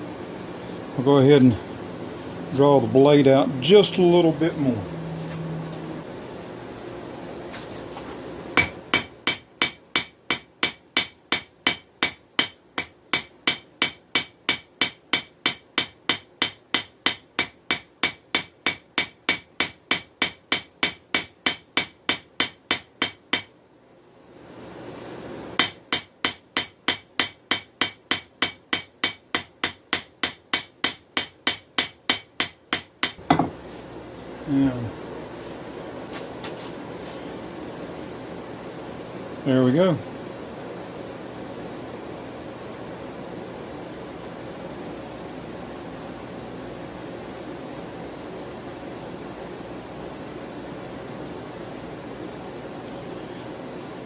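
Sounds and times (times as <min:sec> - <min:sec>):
hammer striking hot steel on anvil: 0:08.6 - 0:23.5, 0:25.6 - 0:33.6.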